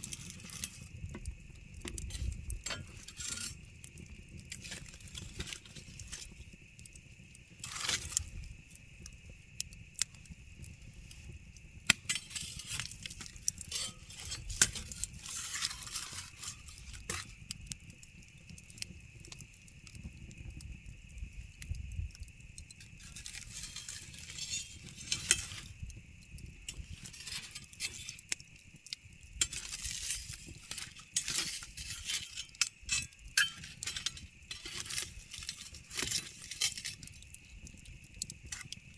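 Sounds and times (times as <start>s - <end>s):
campfire crackling and popping: 0.0s - 38.9s.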